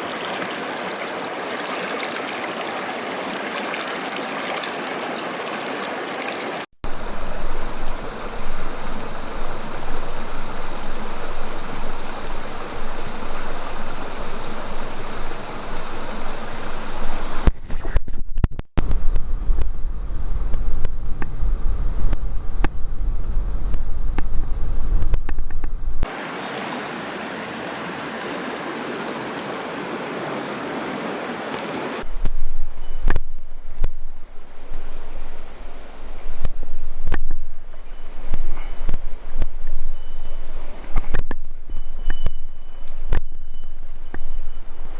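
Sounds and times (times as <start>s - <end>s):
river water rushing: 0.0s - 17.5s, 26.1s - 32.2s
deep rumble: 6.8s - 17.9s, 18.8s - 26.1s, 32.0s - 44.9s.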